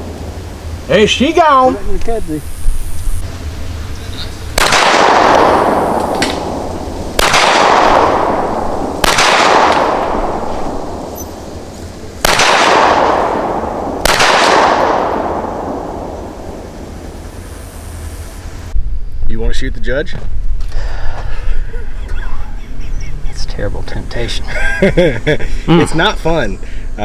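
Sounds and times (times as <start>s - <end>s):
pistol shots echoing: 4.6s - 11.5s, 12.2s - 16.6s.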